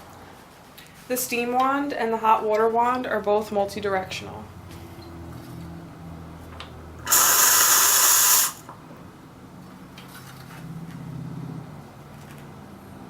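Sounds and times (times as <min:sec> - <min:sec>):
espresso steam wand hissing: 0:07.1 - 0:08.6.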